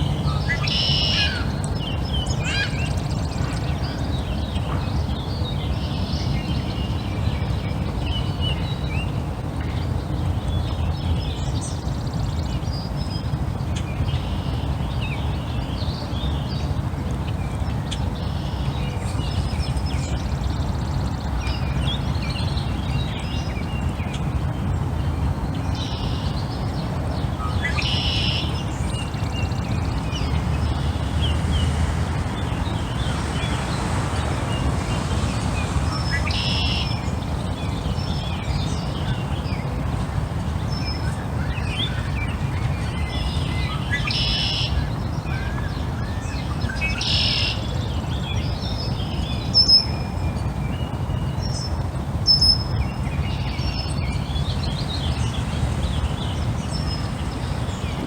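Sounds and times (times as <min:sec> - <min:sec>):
birds chirping and calling: 0:00.0 - 0:04.7, 0:17.9 - 0:45.9
steady low rumble: 0:16.0 - 0:44.0, 0:51.8 - 0:58.0.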